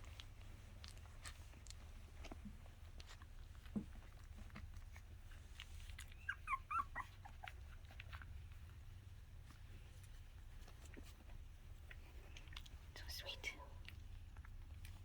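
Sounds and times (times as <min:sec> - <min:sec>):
puppies whimpering: 0:05.7 - 0:08.5.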